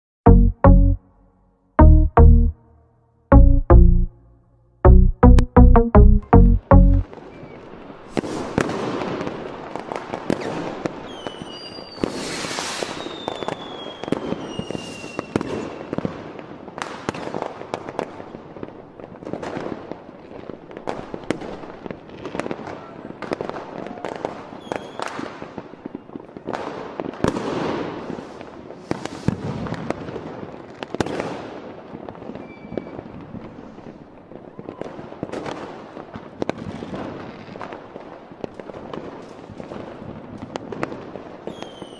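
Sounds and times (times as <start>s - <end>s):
fireworks bangs and crackles: 7.1s - 41.9s
whistling rockets: 10.2s - 16.1s, 23.9s - 25.3s, 27.4s - 29.9s, 32.3s - 33.2s, 41.5s - 41.9s.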